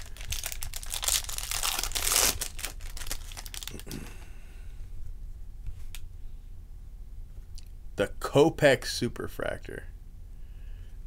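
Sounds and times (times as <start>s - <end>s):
foil wrapper tearing and crinkling: 0.0s - 4.0s.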